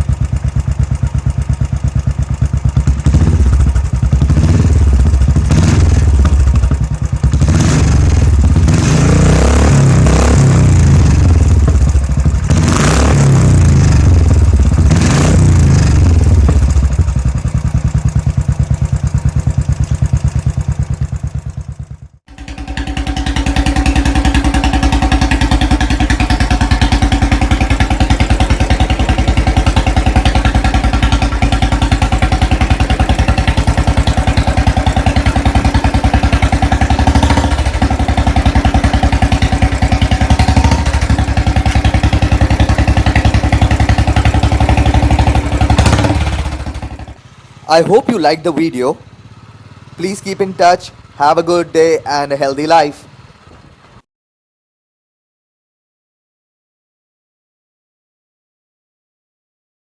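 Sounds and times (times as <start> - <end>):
motorcycle engine revving and idling: 0.0 - 54.1.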